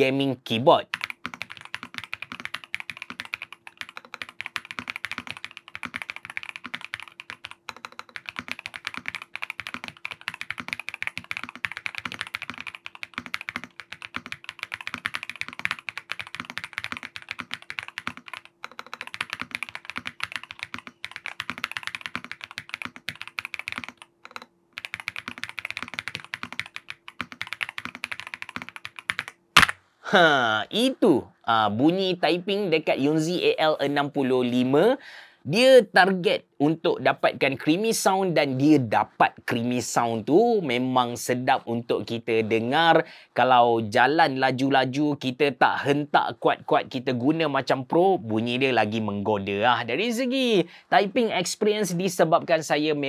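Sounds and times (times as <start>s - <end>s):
mechanical keyboard typing: 0.8s - 29.7s.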